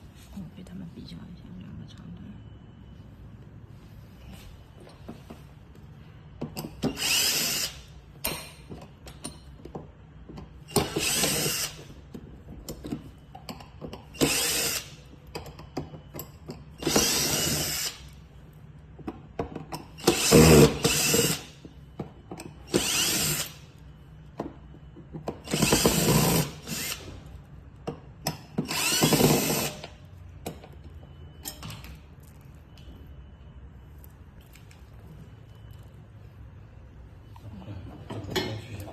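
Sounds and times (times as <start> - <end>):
power drill running: 6.9 - 7.8, 10.7 - 11.8, 14.2 - 15.0, 16.8 - 18.0, 20.0 - 21.5, 22.7 - 23.6, 25.4 - 27.1, 28.7 - 29.8.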